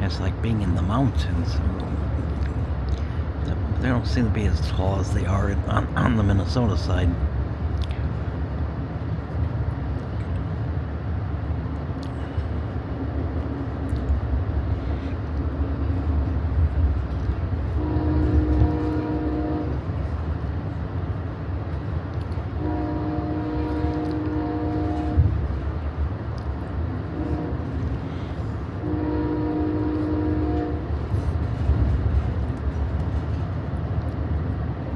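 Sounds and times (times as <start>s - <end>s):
train rumbling: 0.0s - 34.9s
train horn blasts: 17.7s - 20.2s, 22.5s - 25.6s, 27.0s - 31.9s.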